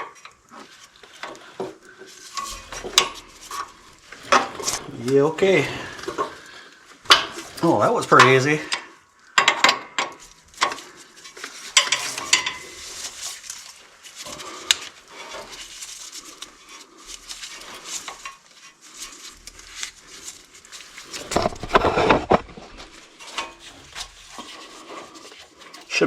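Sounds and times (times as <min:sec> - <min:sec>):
metal tools clinking and rattling: 0:01.2 - 0:08.8, 0:09.4 - 0:13.2.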